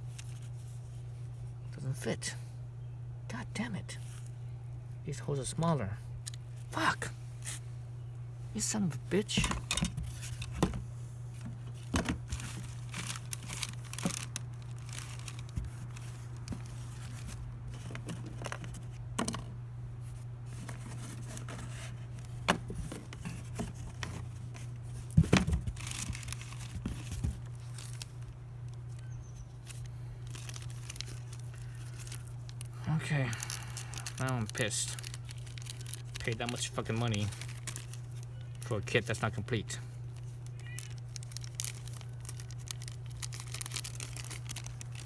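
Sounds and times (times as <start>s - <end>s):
steady low hum: 0.0s - 45.0s
packaging crinkling: 11.4s - 18.9s, 20.5s - 45.0s.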